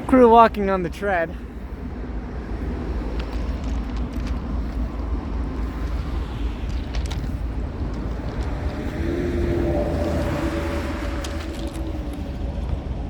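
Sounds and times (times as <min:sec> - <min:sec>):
locomotives rumbling low: 0:00.0 - 0:13.0.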